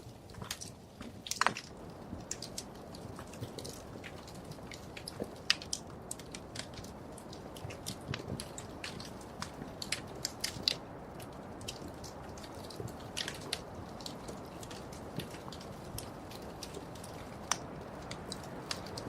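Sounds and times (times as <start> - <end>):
low rumble of flames: 0.0 - 19.0
wood fire pops and snaps: 0.0 - 19.0.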